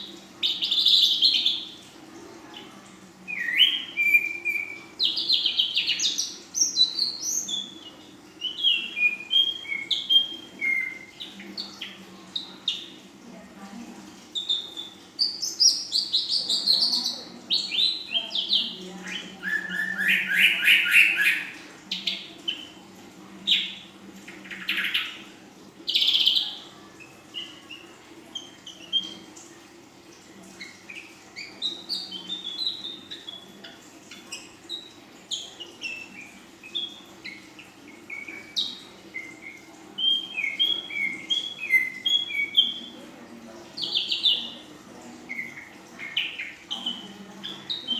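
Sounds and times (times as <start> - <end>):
bird singing harsh and whistled notes: 3.3 - 7.8, 8.4 - 12.0, 14.4 - 22.7, 34.7 - 42.9.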